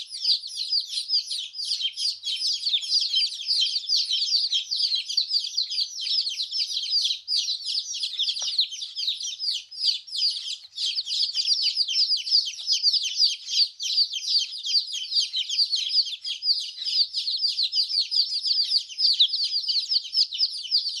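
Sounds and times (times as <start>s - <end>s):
baby chicks chirping: 0.0s - 21.0s.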